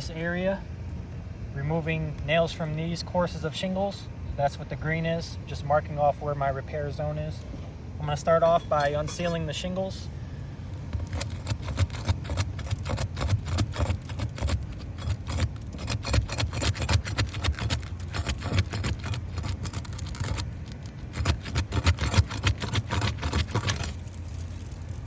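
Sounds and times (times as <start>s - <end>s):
low steady rumble: 0.0s - 25.0s
roof shingles crackling and tearing: 10.8s - 25.0s.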